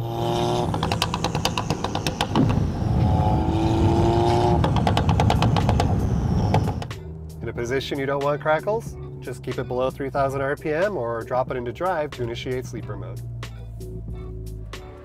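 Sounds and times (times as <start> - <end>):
car engine revving: 0.0 - 13.9
exhaust pops and crackles: 0.2 - 8.6.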